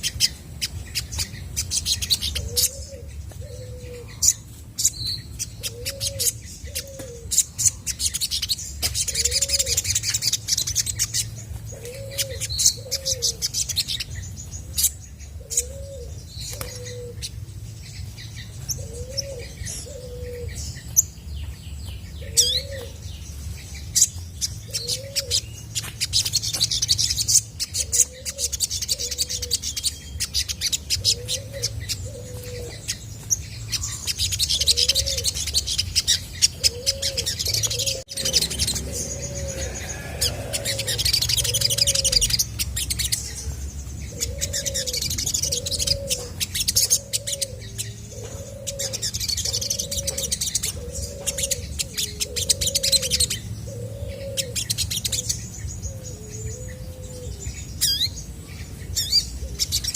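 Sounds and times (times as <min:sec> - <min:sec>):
bird chirps and trills: 0:00.0 - 0:59.9
low cooing: 0:02.4 - 0:04.3, 0:09.1 - 0:09.9, 0:11.7 - 0:13.4, 0:15.4 - 0:17.2, 0:18.8 - 0:20.6, 0:34.6 - 0:35.4, 0:36.6 - 0:42.4, 0:43.2 - 0:55.3.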